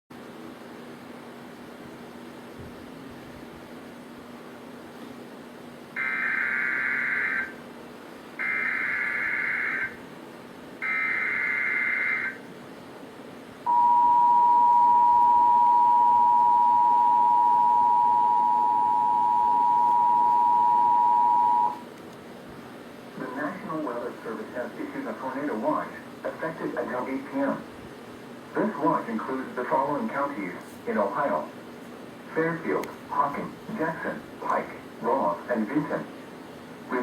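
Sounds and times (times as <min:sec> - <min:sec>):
digital header data bursts: 0:08.4 - 0:10.0, 0:10.8 - 0:12.4
two-tone attention signal: 0:13.7 - 0:21.8.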